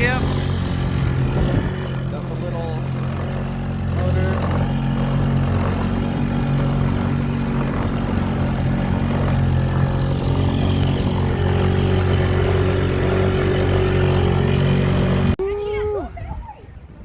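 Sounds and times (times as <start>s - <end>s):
outboard motor running: 0.0s - 16.0s.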